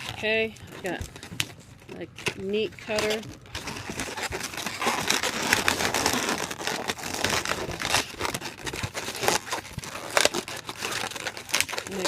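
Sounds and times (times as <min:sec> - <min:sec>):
balloons rubbing and squeaking: 0:00.0 - 0:12.0.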